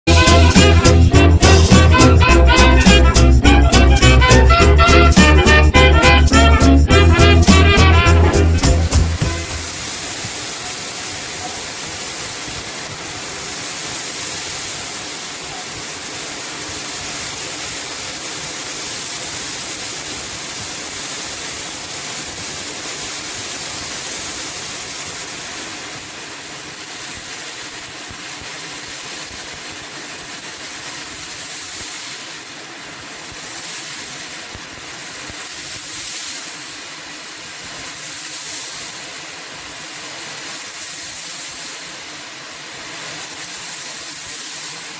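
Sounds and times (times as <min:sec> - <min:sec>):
vacuum cleaner running: 0:06.9 - 0:17.2.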